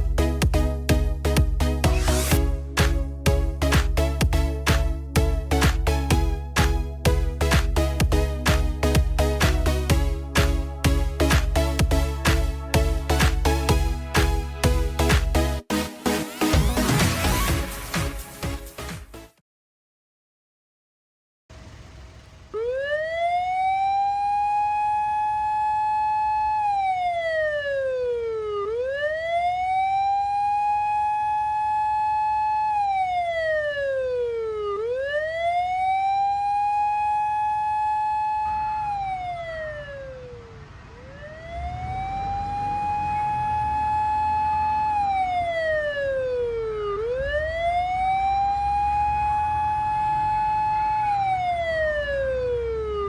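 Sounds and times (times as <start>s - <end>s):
electronic police siren wailing: 0.0s - 2.9s, 3.5s - 18.1s, 22.6s - 53.0s.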